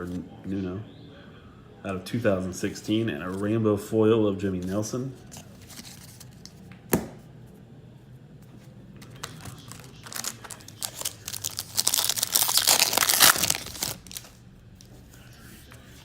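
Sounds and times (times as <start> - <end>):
foil wrapper tearing and crinkling: 9.2 - 14.4.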